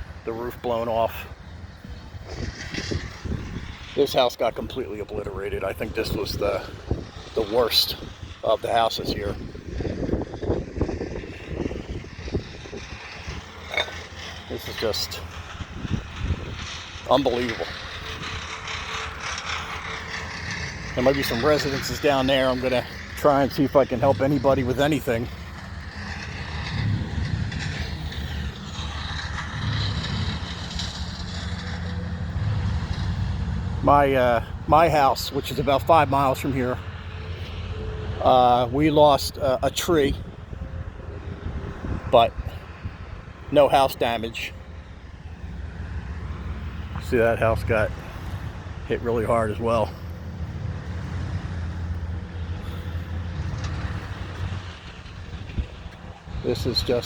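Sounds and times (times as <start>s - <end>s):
motor engine low rumble: 0.0s - 57.0s.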